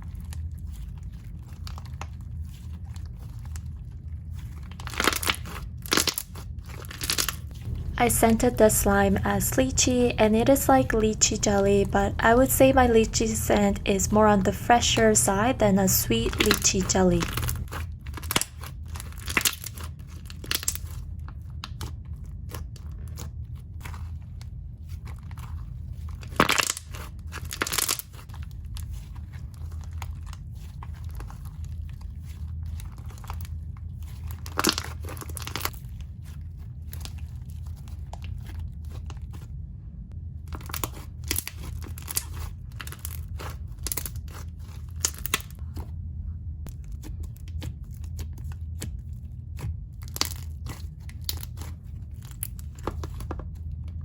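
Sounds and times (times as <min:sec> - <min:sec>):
slime squishing and popping: 0:04.5 - 0:07.5, 0:18.1 - 0:23.3
steady low hum: 0:06.9 - 0:18.1, 0:28.2 - 0:54.0.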